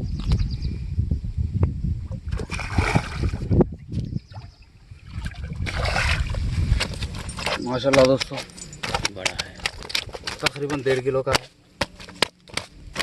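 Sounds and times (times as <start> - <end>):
water splashing and sloshing: 2.1 - 3.6, 4.3 - 10.6.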